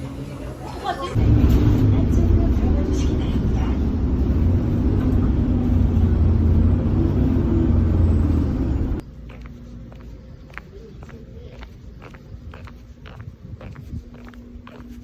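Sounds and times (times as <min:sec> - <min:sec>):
loud low rumble: 0:01.2 - 0:09.0.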